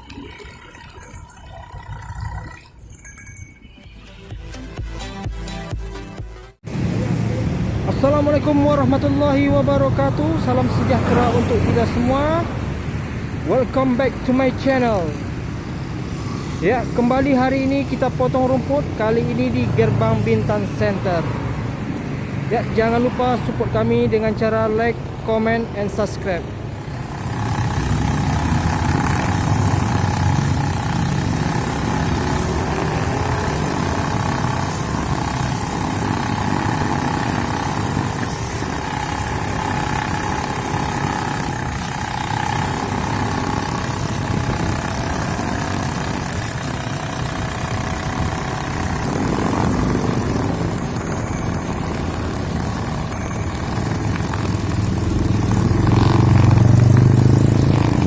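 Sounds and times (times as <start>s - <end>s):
brushcutter cutting grass: 6.7s - 12.5s, 26.7s - 58.0s.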